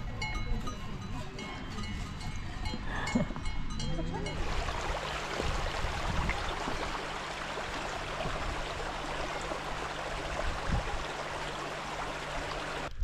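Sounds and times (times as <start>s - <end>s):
mountain stream rushing: 4.4s - 13.0s.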